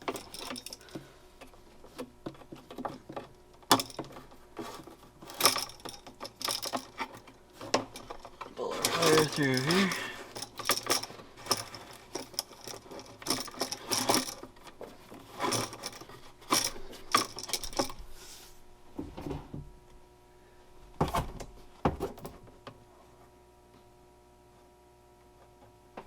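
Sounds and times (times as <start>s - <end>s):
cable rustling and scraping: 0.0s - 18.6s.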